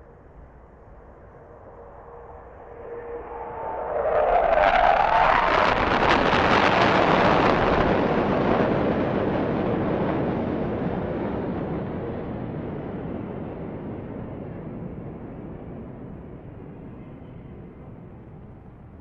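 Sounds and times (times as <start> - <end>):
fighter jet flyby: 0.7 - 15.0.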